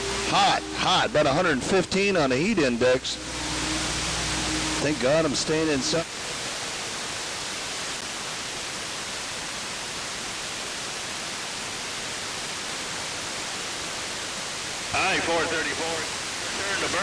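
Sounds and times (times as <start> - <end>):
radio static hiss: 0.0 - 8.4, 13.6 - 17.0.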